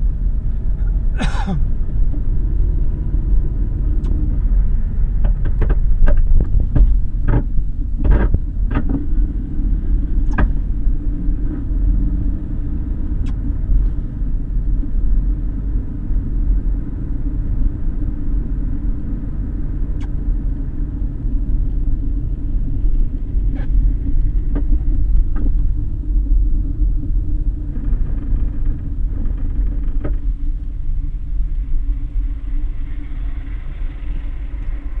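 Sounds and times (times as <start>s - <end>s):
car low rumble: 0.0s - 35.0s.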